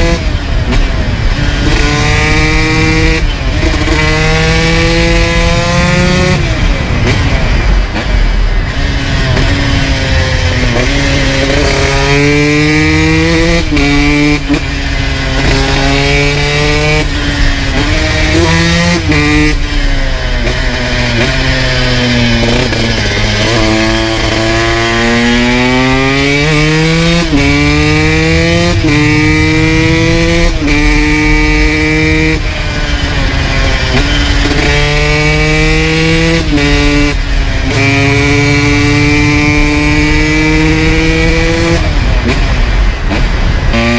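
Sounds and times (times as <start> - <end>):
two-stroke motorcycle engine revving: 0.0 - 43.9.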